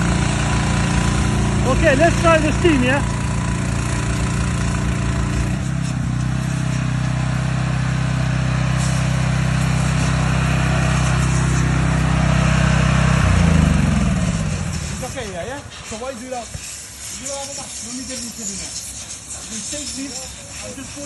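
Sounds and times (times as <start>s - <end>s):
pressure washer running: 0.0s - 21.0s
steam hiss: 8.6s - 11.8s, 13.9s - 21.0s.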